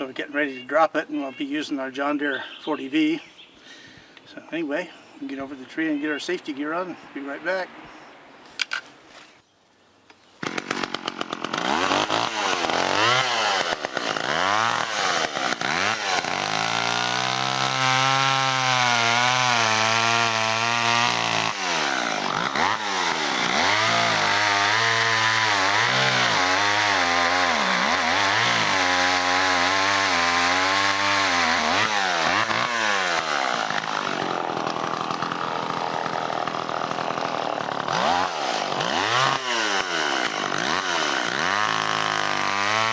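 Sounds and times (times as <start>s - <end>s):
chainsaw cutting into tree: 10.4s - 42.9s.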